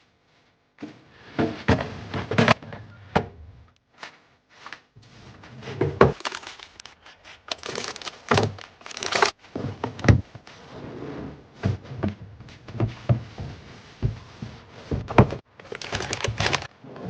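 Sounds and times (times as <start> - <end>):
plastic packaging rustling: 6.1 - 9.4, 15.4 - 16.8
items being set down: 11.6 - 16.8.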